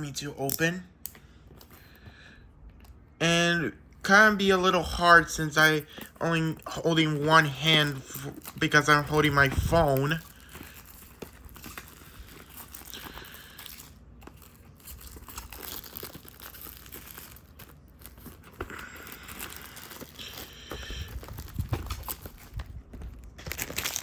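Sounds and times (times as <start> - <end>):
plastic wrapping crinkling and tearing: 5.2 - 24.0.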